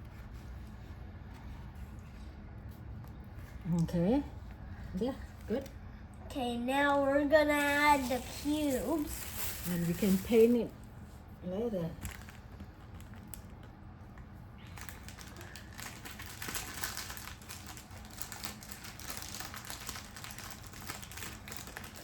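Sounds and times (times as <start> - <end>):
plastic packaging crinkling: 7.6 - 11.0, 12.0 - 22.0.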